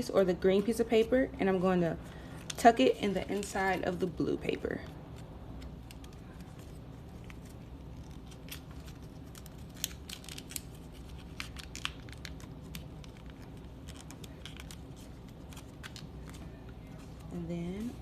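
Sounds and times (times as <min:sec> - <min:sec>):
low steady hum: 0:00.0 - 0:18.0
paper rustling and crinkling: 0:04.7 - 0:18.0.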